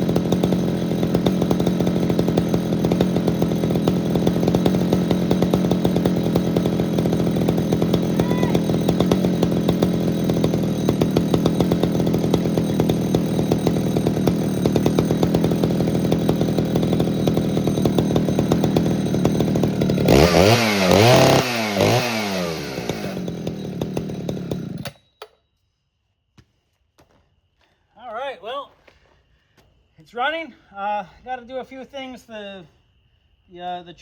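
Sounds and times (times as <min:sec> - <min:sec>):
chainsaw idling and revving: 0:00.0 - 0:25.0.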